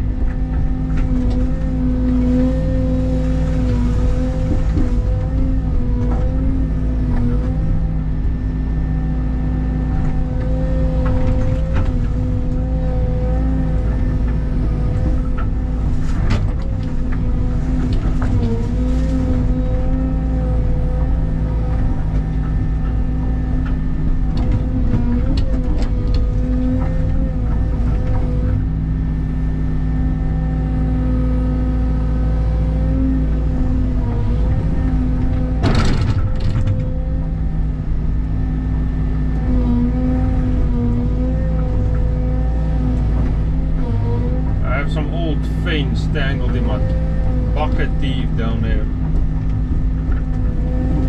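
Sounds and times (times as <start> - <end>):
excavator engine running: 0.0 - 51.0
pitched whine: 0.0 - 51.0.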